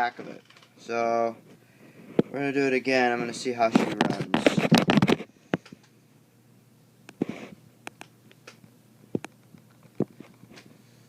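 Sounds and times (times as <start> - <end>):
sharp clicks and light knocks: 7.8 - 10.7.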